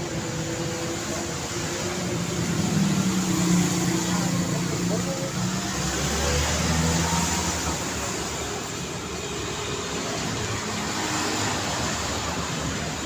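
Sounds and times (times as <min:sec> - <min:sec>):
street traffic: 0:00.0 - 0:13.0
vehicle engine passing close: 0:01.0 - 0:08.8.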